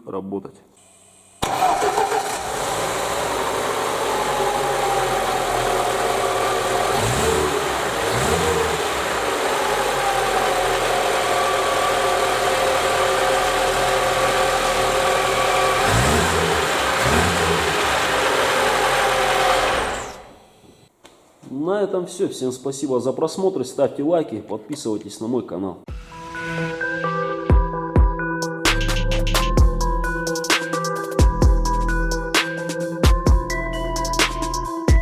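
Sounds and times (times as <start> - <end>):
car engine idling and revving: 1.4 - 20.6.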